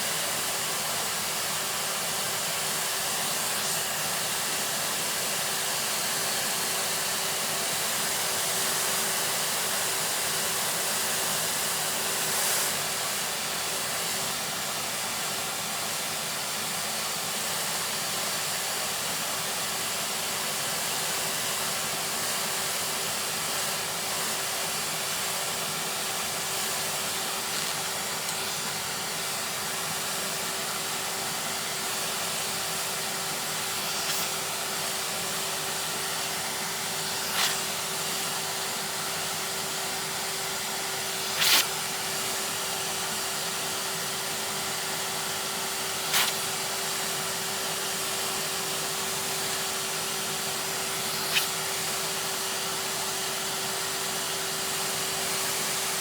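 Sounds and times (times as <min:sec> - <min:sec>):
vacuum cleaner running: 0:00.0 - 0:56.0.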